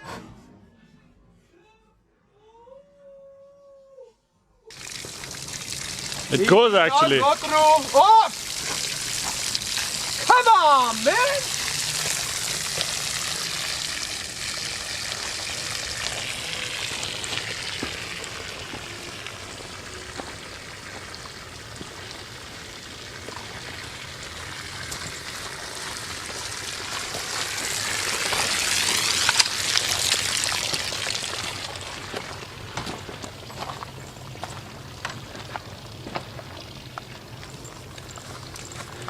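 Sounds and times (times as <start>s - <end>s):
water pouring and splashing: 4.7s - 39.0s.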